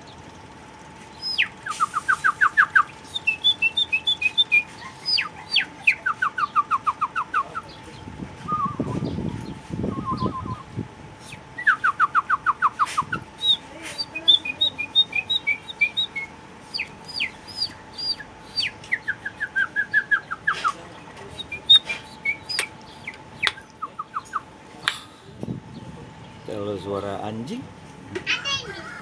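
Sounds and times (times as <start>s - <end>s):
faint steady hum: 0.0s - 29.0s
person whistling bird calls: 1.2s - 7.7s, 8.5s - 9.2s, 9.9s - 20.8s, 21.4s - 24.4s.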